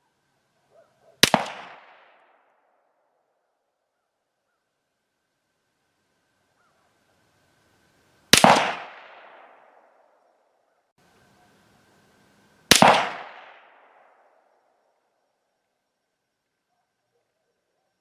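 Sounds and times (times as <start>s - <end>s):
rifle shots with echo: 1.2s - 2.5s, 8.3s - 10.2s, 12.7s - 14.3s.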